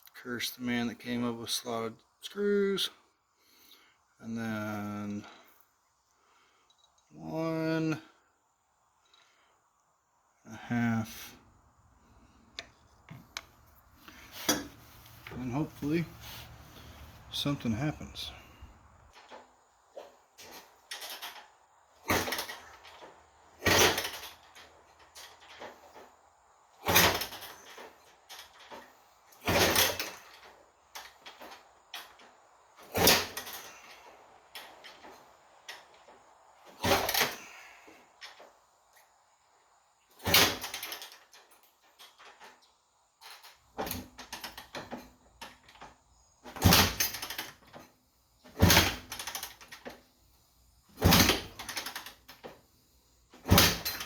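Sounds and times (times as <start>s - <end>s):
two-stroke motorcycle being kicked over: 20.0s - 24.5s, 26.8s - 28.8s, 29.4s - 30.6s, 32.8s - 33.7s, 36.7s - 37.6s, 40.2s - 41.3s, 46.5s - 47.7s, 48.5s - 49.9s, 51.0s - 52.3s, 53.4s - 54.0s.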